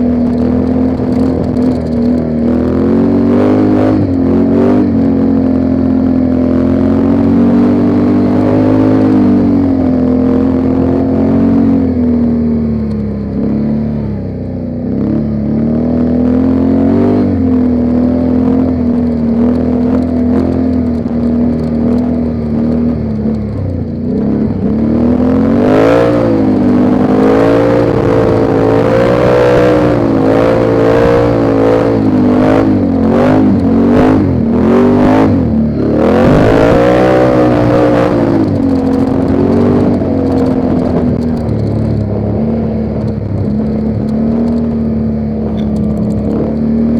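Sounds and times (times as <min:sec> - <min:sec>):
atv engine revving: 0:00.0 - 0:46.9
knocks and rattles: 0:00.2 - 0:02.8, 0:36.2 - 0:46.9.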